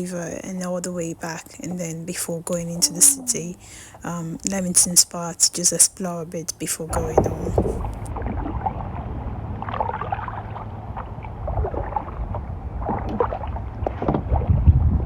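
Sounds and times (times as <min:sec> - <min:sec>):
paddles splashing in water: 0:06.8 - 0:15.0
wind rumble on microphone: 0:06.9 - 0:15.0.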